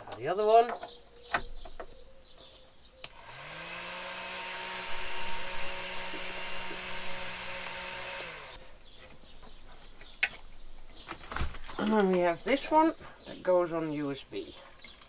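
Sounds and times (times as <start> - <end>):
electric fan motor humming: 3.0 - 8.8.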